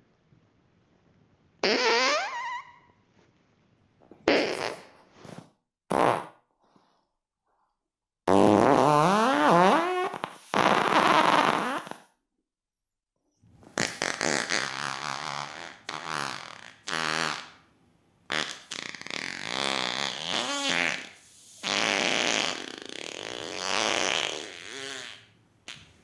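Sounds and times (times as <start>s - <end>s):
farts: 1.6s - 2.9s, 4.1s - 6.5s, 8.3s - 12.2s, 13.6s - 17.6s, 18.3s - 26.0s.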